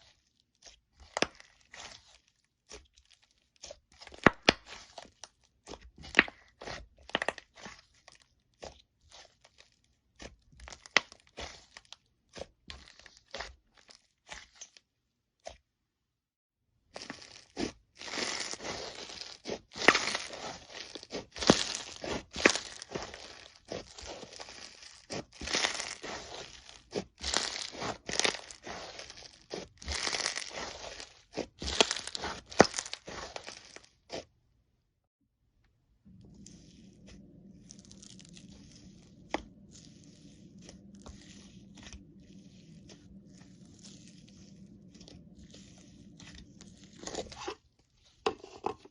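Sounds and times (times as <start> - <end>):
slime squeezed crackling: 0.0 - 14.8, 16.9 - 34.2, 36.1 - 48.2
slime popping: 17.0 - 33.8.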